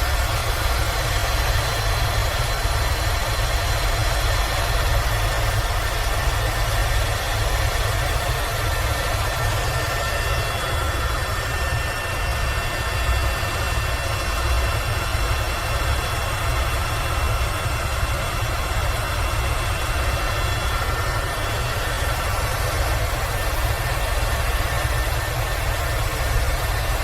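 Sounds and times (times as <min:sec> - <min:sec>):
helicopter rotor beat: 0:00.0 - 0:27.0
turbine engine whine: 0:00.0 - 0:27.0.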